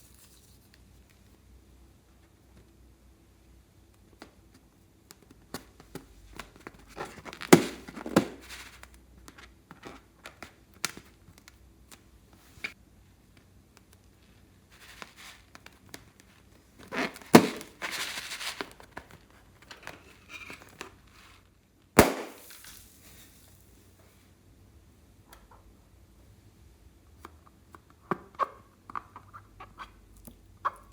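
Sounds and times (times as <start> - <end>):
balloon popping: 16.9 - 17.8, 22.0 - 22.6.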